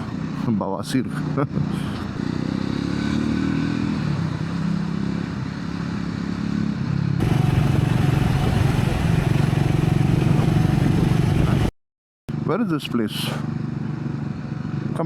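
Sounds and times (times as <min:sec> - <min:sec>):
motorcycle engine cruising: 0:01.1 - 0:11.7
wind rushing past: 0:07.2 - 0:11.7.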